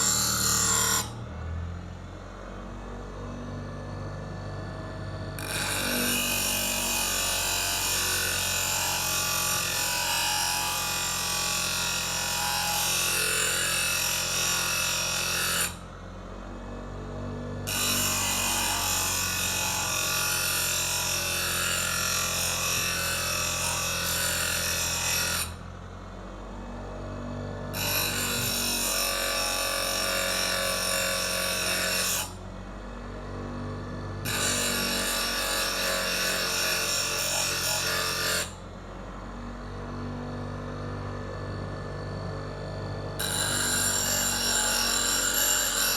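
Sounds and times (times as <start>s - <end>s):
grinder grinding knife blade: 0.0s - 1.3s, 5.4s - 15.8s, 17.7s - 25.7s, 27.7s - 32.4s, 33.2s - 38.6s, 41.4s - 45.9s.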